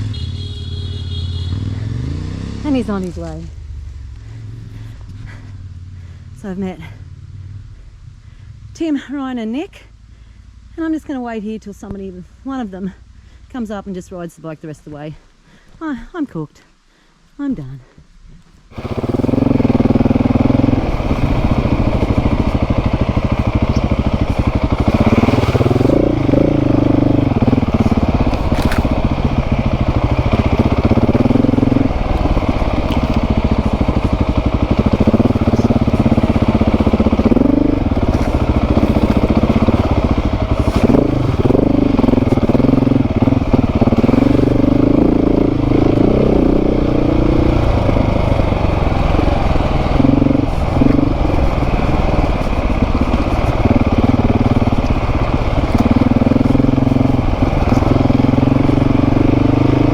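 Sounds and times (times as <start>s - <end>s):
motorcycle engine revving: 0.0s - 8.8s, 18.7s - 59.9s.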